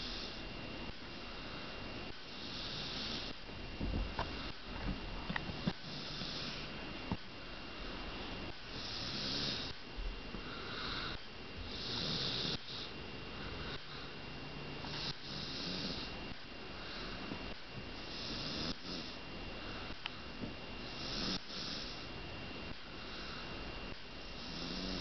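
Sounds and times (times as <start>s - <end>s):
person snoring: 2.4s - 3.4s, 5.7s - 6.7s, 8.7s - 9.8s, 10.5s - 14.1s, 14.9s - 16.2s, 18.1s - 19.2s, 20.9s - 22.0s, 24.4s - 25.0s.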